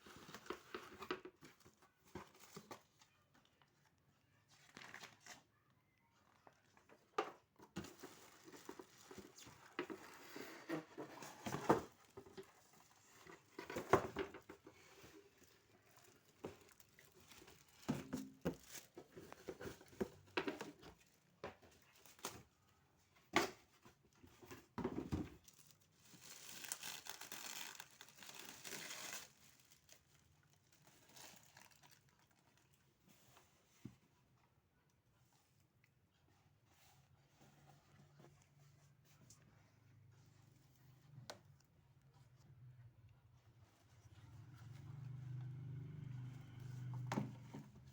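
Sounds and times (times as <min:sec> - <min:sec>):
packaging crinkling and rustling: 0:06.4 - 0:22.7, 0:25.2 - 0:33.0
packaging tearing rustle: 0:25.9 - 0:32.3.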